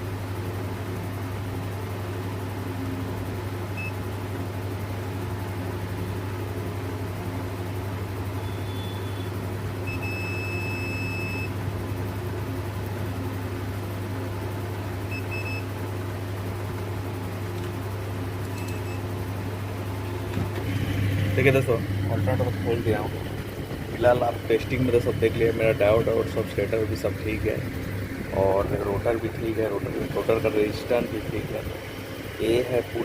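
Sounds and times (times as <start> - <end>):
low electrical hum: 0.0 - 33.0
workshop background hiss: 4.4 - 33.0
short high electronic beeps: 8.4 - 9.3, 9.9 - 11.5.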